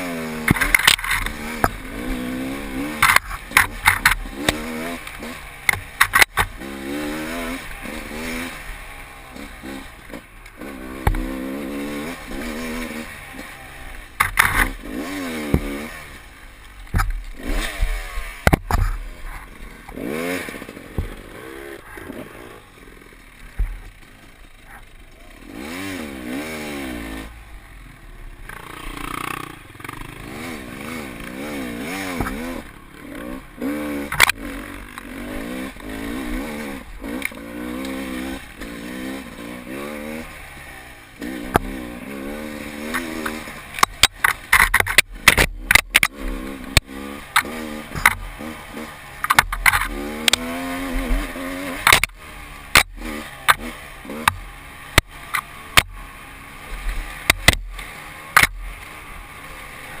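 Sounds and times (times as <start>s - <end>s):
dirt bike engine revving: 0.0s - 60.0s
sharp knocks and clatter: 0.4s - 1.8s, 2.9s - 6.6s, 11.0s - 11.4s, 14.2s - 16.0s, 16.8s - 22.3s, 23.5s - 24.1s, 34.1s - 35.1s, 42.8s - 48.6s, 49.2s - 56.0s, 56.8s - 58.7s.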